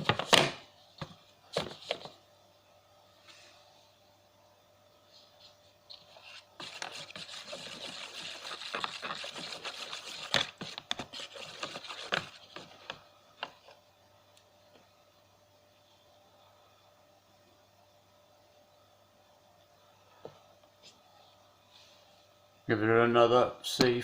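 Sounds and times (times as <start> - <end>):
rubbing and scraping: 5.4 - 13.0.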